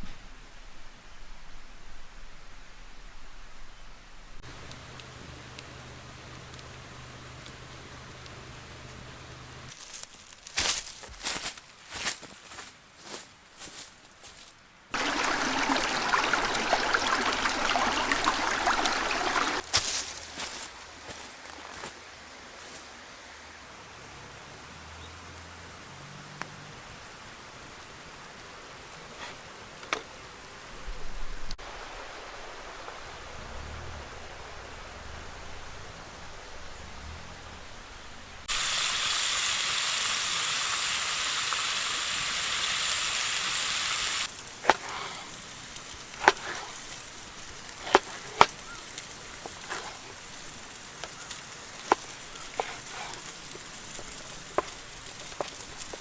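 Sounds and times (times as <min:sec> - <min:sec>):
meat sizzling over fire: 0:04.4 - 0:11.4, 0:14.9 - 0:21.8, 0:38.4 - 0:56.0
fire popping and crackling: 0:04.4 - 0:11.6, 0:14.9 - 0:19.9, 0:43.8 - 0:56.0.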